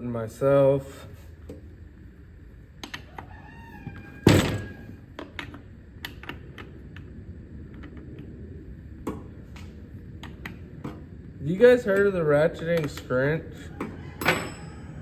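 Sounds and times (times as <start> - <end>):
rooster crowing faintly: 3.0 - 5.0, 13.6 - 15.0.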